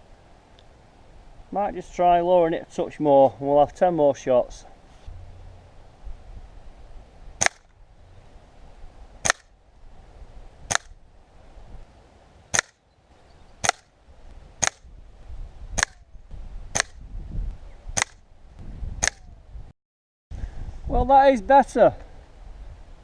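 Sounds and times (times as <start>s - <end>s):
air rifle shots: 7.4s - 7.7s, 9.2s - 9.5s, 10.7s - 11.0s, 12.5s - 12.8s, 13.6s - 13.9s, 14.6s - 14.9s, 15.8s - 16.0s, 16.7s - 17.0s, 18.0s - 18.2s, 19.0s - 19.3s.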